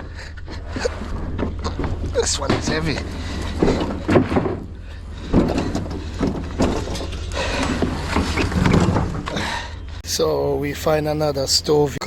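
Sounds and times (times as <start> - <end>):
steady low rumble: 0.0 - 12.0
metal scrap clanking: 0.5 - 10.0
metal scraping: 0.5 - 10.0.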